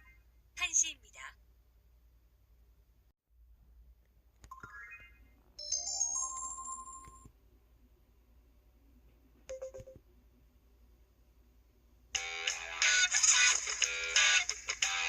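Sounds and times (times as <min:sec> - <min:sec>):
synthesized chime: 0:04.6 - 0:07.3.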